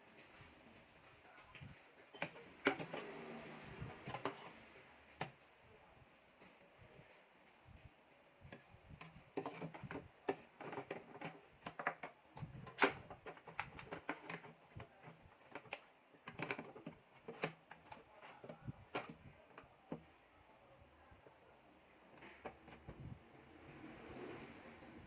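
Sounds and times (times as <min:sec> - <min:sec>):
computer parts clicking and knocking: 0:02.0 - 0:03.3, 0:09.0 - 0:20.1.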